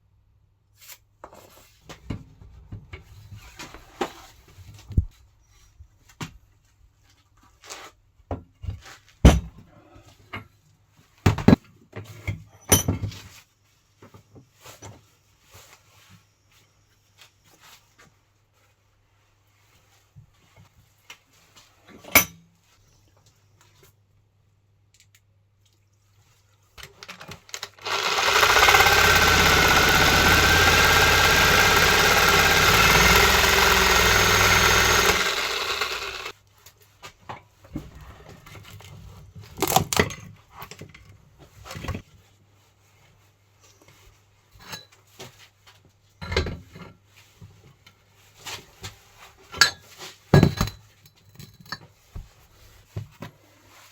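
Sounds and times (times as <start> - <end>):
power tool running: 27.7 - 36.3.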